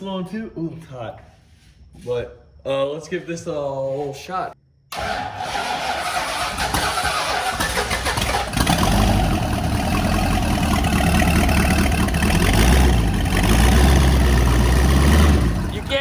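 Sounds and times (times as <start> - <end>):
car engine starting and idling: 4.9 - 16.0.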